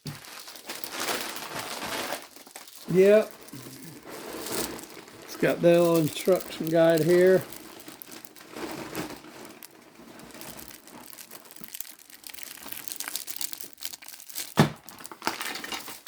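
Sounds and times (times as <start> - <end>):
packaging crinkling and rustling: 0.0 - 16.0.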